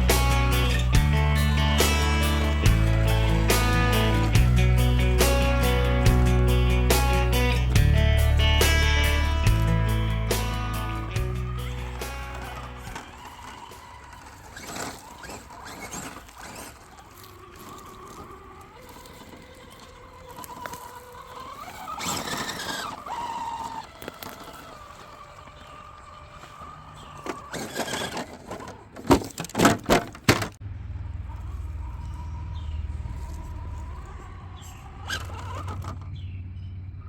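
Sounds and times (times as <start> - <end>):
electric motor whine: 0.0 - 28.7, 31.3 - 36.2
tyre and drivetrain noise: 0.0 - 37.0.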